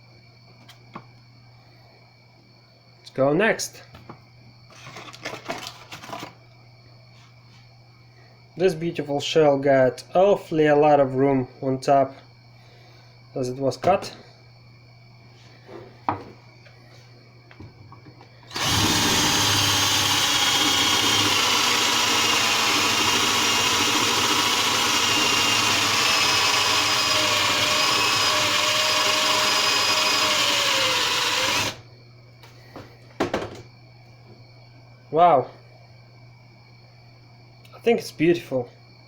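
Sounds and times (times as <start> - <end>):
electric drill whining: 18.5 - 31.8.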